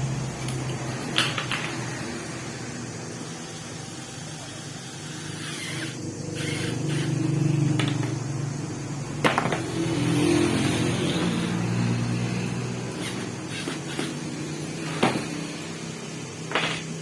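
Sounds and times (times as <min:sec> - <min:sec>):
small electric motor humming: 0:02.0 - 0:17.0.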